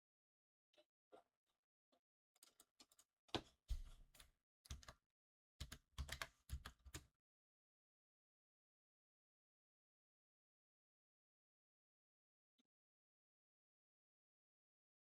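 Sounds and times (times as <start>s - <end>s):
computer keyboard typing: 4.7s - 4.9s, 5.6s - 7.0s.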